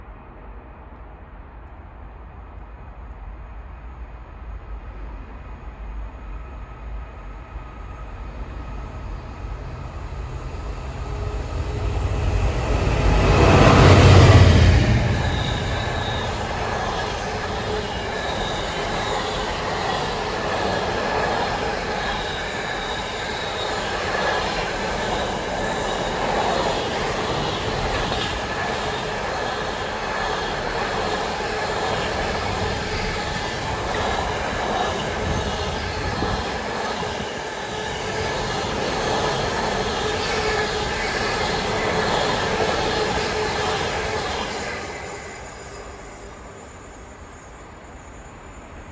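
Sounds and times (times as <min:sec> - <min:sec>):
diesel locomotive engine passing: 0:00.0 - 0:48.9
train wagons rumbling and clattering: 0:08.3 - 0:45.3.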